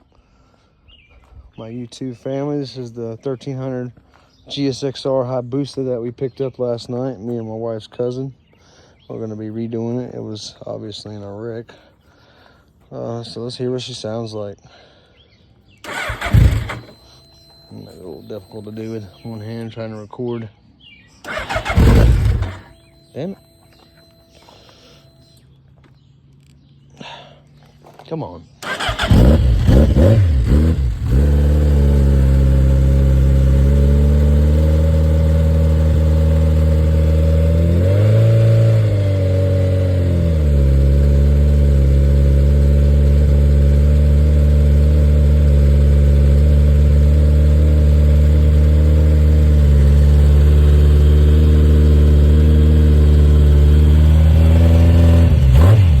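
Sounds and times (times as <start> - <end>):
motorcycle engine revving: 15.8 - 19.4, 21.2 - 24.3, 28.6 - 56.0
motorcycle engine starting and idling: 15.8 - 19.8, 21.2 - 25.5, 28.6 - 56.0.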